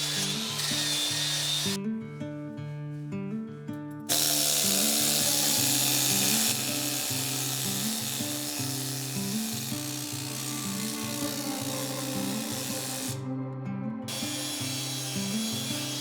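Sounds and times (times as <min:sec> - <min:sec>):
power tool stripping rust: 0:00.0 - 0:01.8, 0:04.1 - 0:13.3, 0:14.1 - 0:16.0.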